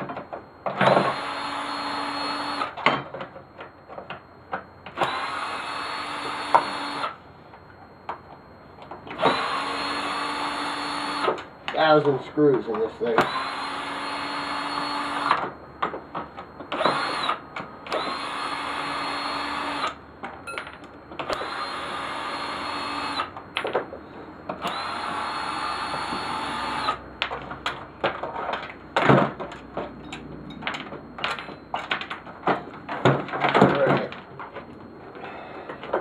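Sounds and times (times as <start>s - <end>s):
drill-driver whine: 0.6s - 7.2s, 9.0s - 12.2s, 12.8s - 15.6s, 16.4s - 23.7s, 24.5s - 27.6s
drill clicks: 13.2s - 15.4s, 24.6s - 27.0s.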